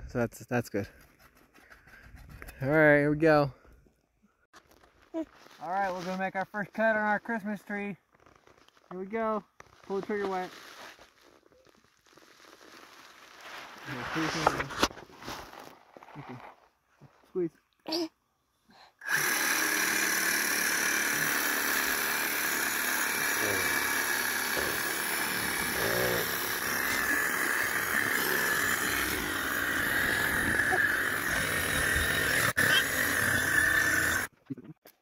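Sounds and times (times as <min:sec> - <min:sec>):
electric saw cutting wood: 0:19.0 - 0:34.3.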